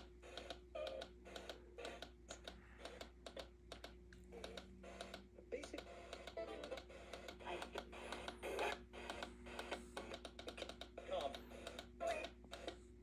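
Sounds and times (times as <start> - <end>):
faint irregular clicks and taps: 0.0 - 12.9
faint steady hum: 0.0 - 13.0.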